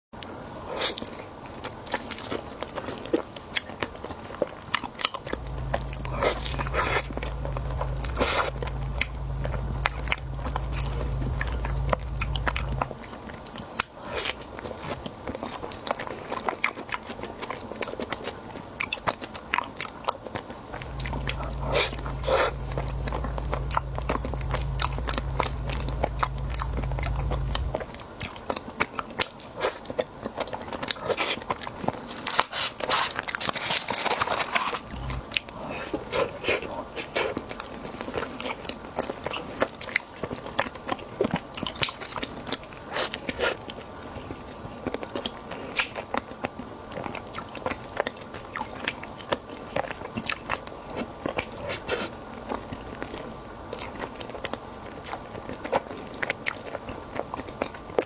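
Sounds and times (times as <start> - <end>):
crunchy bites and chewing: 1.9 - 13.2, 14.0 - 43.9
low hum: 5.2 - 13.1, 20.7 - 28.1, 34.7 - 35.4.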